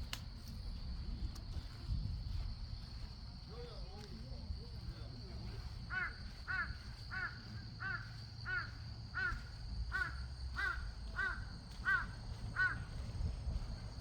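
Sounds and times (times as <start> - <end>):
crow cawing: 5.9 - 13.0.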